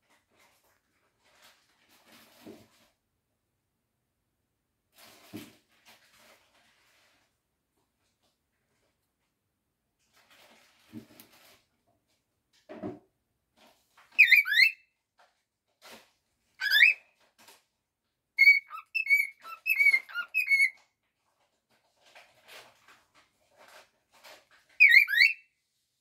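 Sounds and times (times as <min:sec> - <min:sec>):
cockatiel whistling: 0:14.2 - 0:14.8, 0:16.6 - 0:17.0, 0:18.4 - 0:20.8, 0:24.8 - 0:25.4.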